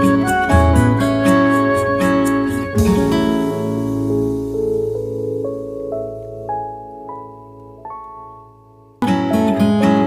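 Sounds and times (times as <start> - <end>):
instrumental music with guitar and keyboard: 0.0 - 10.0.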